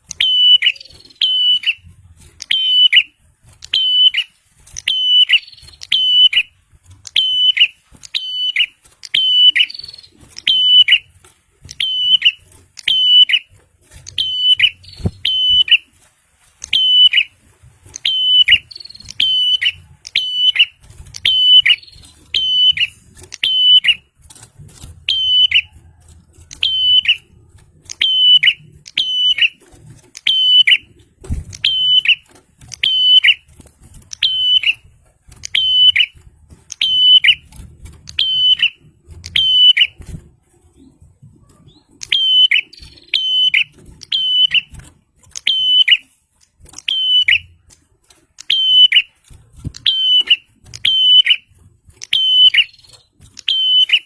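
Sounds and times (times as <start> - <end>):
bird whistled calls: 0.1 - 1.8, 2.4 - 3.1, 3.7 - 6.5, 7.1 - 11.1, 11.7 - 13.5, 14.1 - 15.9, 16.6 - 17.3, 18.0 - 24.0, 25.1 - 25.7, 26.6 - 27.2, 27.9 - 29.6, 30.2 - 30.9, 31.6 - 32.2, 32.8 - 33.4, 34.2 - 34.8, 35.5 - 37.4, 38.1 - 40.0, 41.7 - 44.7, 45.4 - 46.1, 46.8 - 47.6, 48.4 - 49.1, 49.8 - 54.0.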